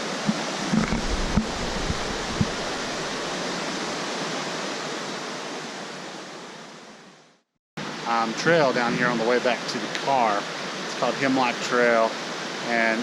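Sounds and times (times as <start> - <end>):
waterfall rushing: 0.0 - 5.6
low thumps: 0.3 - 3.3.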